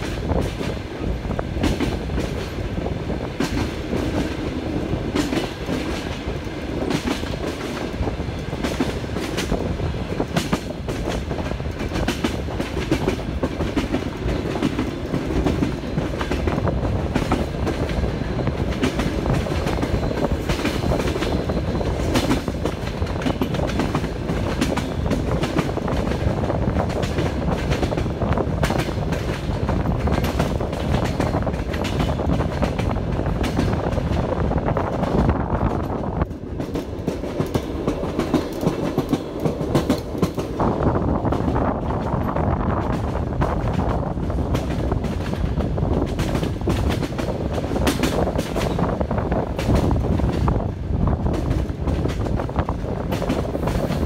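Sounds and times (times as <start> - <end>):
train wheels clattering over rails: 0.0 - 54.0.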